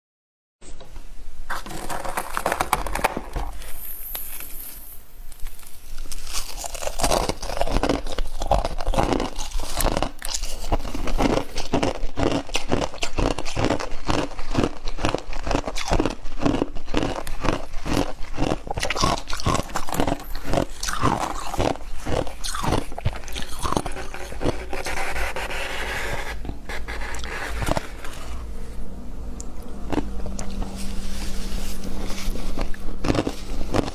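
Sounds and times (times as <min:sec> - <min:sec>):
frost being chewed: 0:04.1 - 0:25.0, 0:29.4 - 0:33.9.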